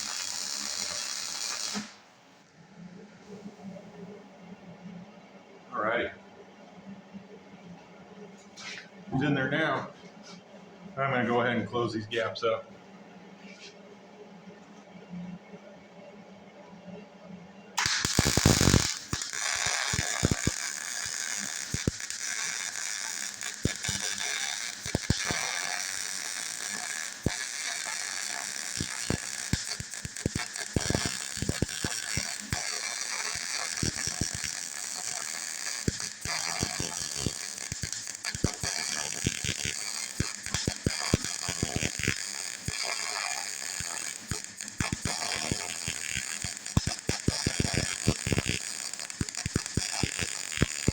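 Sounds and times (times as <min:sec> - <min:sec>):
arc welding crackling: 0:00.0 - 0:02.1, 0:17.8 - 0:50.9.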